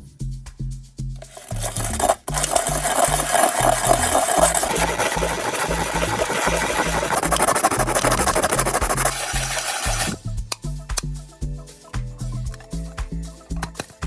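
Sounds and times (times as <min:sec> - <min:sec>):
background music with bass: 0:00.0 - 0:07.4, 0:09.0 - 0:14.0
hand tool rasping and scraping: 0:01.2 - 0:10.2.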